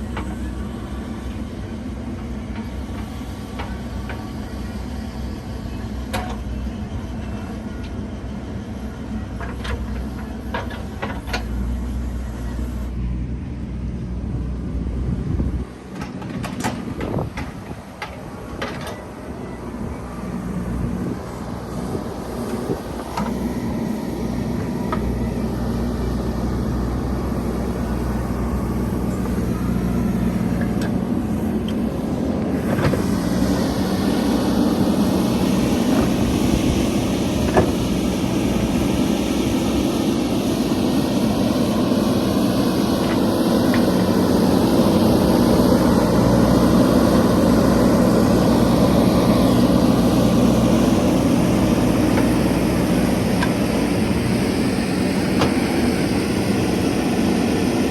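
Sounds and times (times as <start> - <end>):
diesel engine running: 0.0 - 57.9.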